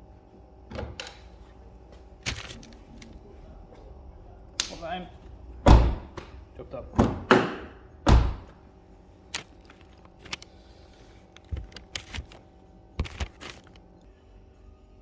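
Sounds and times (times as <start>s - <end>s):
car door thudding shut: 5.7s - 6.3s, 7.0s - 8.6s.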